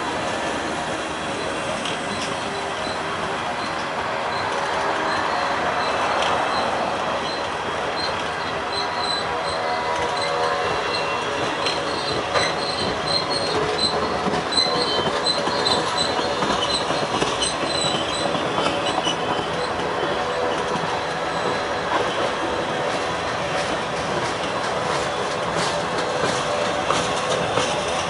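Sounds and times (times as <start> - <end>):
train cars rumbling on rails: 0.0 - 28.0
high-pitched wheel squeal: 1.4 - 22.1.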